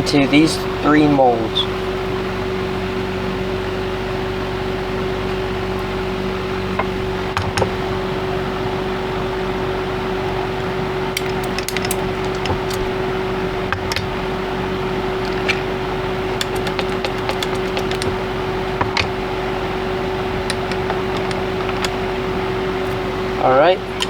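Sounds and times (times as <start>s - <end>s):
steady mechanical hum: 0.0s - 24.0s.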